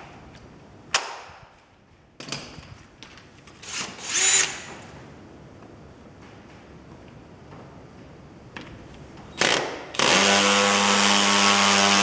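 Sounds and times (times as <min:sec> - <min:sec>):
electric hammer drill whining: 0:03.6 - 0:04.7, 0:09.4 - 0:12.0.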